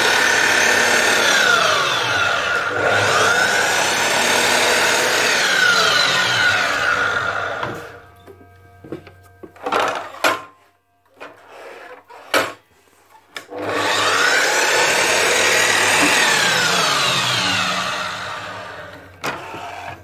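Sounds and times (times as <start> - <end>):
miter saw motor whining: 0.0 - 8.2, 13.5 - 20.0.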